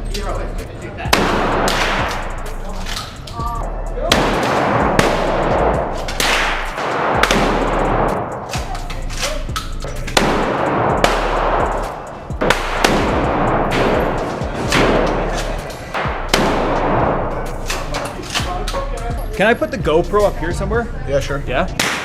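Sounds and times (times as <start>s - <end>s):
music: 0.0s - 22.0s
echoing gunshots: 1.1s - 2.4s, 4.1s - 8.8s, 10.1s - 17.4s, 21.8s - 22.0s.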